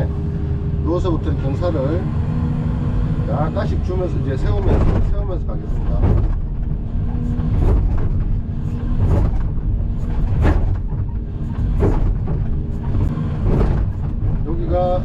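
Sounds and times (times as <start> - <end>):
excavator diesel engine running: 0.0 - 15.0
hydraulic strain: 4.5 - 15.0.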